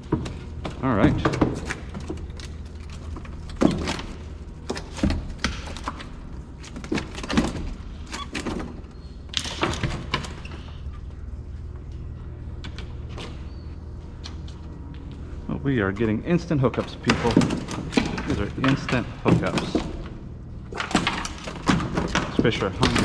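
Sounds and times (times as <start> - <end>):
steady low rumble: 10.6 - 20.8.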